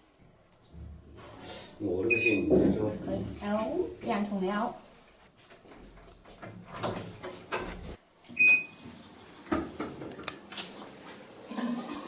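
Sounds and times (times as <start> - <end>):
washing machine beep: 2.1 - 2.5, 8.3 - 8.8
knocks and clatter of handling: 5.4 - 8.0.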